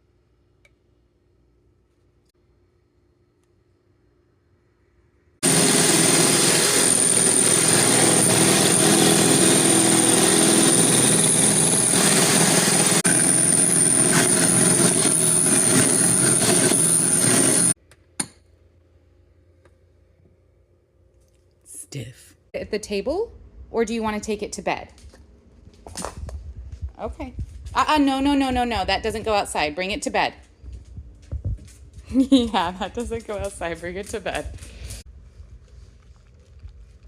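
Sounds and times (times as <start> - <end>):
electric mixer whining: 5.4 - 17.8.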